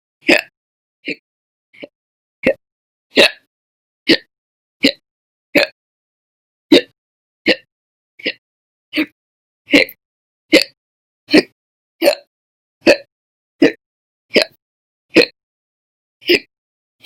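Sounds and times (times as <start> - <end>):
woman hiccuping: 0.2 - 0.5, 3.2 - 3.5, 4.1 - 5.0, 6.7 - 8.4, 9.7 - 15.4.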